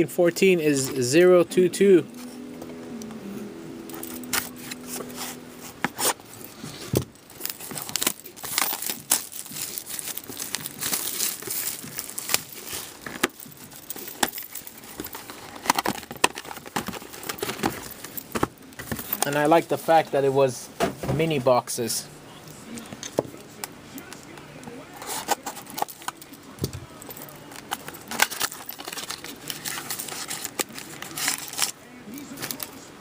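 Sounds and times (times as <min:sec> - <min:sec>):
cardboard and wrapping tearing: 0:04.0 - 0:19.3, 0:27.5 - 0:32.7.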